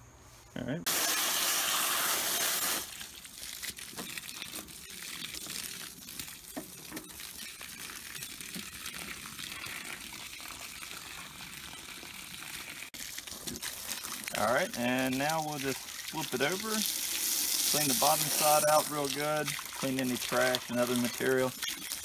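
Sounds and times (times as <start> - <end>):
hose spraying water on metal: 0.9 - 22.0.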